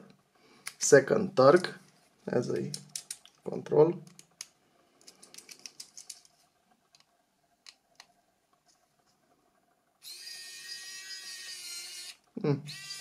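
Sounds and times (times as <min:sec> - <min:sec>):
small plastic clicks: 0:02.6 - 0:03.4, 0:04.1 - 0:06.3
electric screwdriver motor whine: 0:10.0 - 0:13.0.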